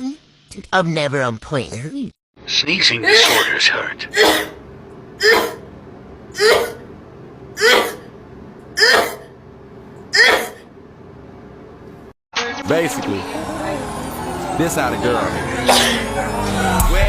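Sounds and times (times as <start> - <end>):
woman sneezing: 3.0 - 3.6, 5.2 - 5.6, 6.4 - 6.8, 7.6 - 8.1, 8.8 - 9.3, 10.2 - 10.6, 15.6 - 16.1.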